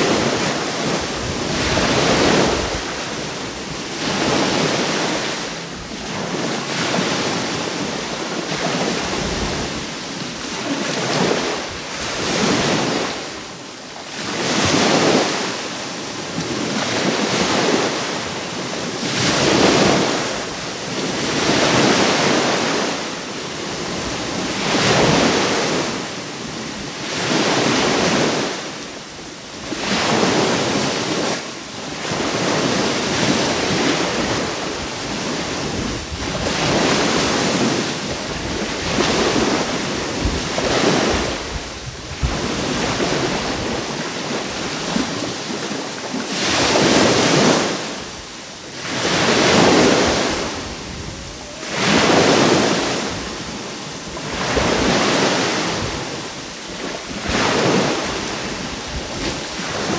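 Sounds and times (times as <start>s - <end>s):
wind on microphone: 0.0s - 13.5s, 16.3s - 59.9s
surf breaking onshore: 29.6s - 59.9s.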